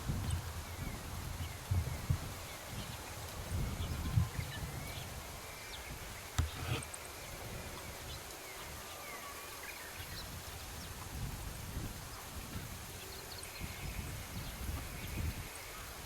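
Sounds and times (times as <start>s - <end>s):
outdoor background noise: 0.0s - 16.0s
sharp click: 6.4s - 6.8s.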